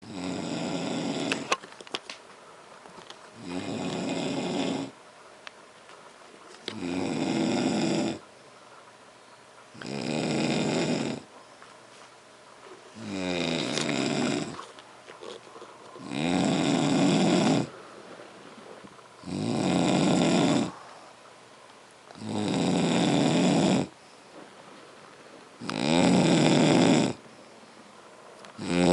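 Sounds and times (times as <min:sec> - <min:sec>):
loud snoring: 0:00.0 - 0:01.6, 0:03.4 - 0:05.0, 0:06.7 - 0:08.2, 0:09.8 - 0:11.3, 0:13.0 - 0:17.8, 0:19.2 - 0:21.0, 0:22.1 - 0:24.0, 0:25.6 - 0:27.2, 0:28.6 - 0:28.9.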